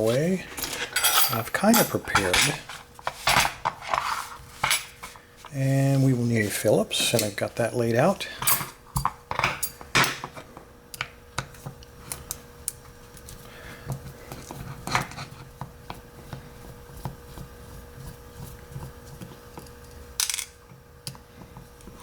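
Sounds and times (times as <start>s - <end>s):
scraping rustle: 0.0s - 7.2s
faint steady hum: 0.0s - 22.0s
metal tools clicking and tapping: 0.5s - 2.6s.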